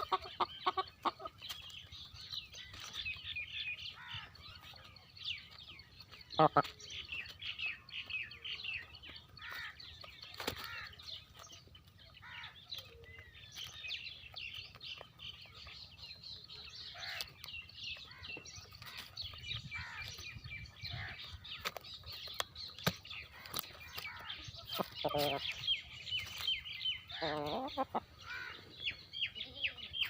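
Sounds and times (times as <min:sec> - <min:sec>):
chickens clucking: 0:00.0 - 0:03.3, 0:04.5 - 0:30.0
small birds chirping: 0:00.0 - 0:30.0.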